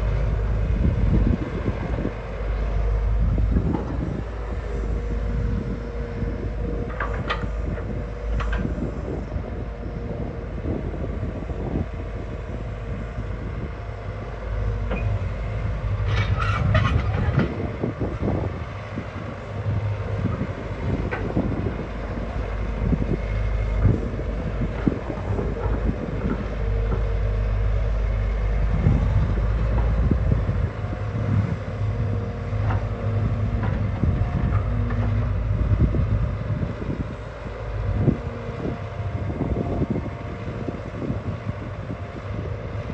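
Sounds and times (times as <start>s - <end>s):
excavator diesel engine droning: 0.0s - 42.9s
clanks and knocks: 16.0s - 17.6s.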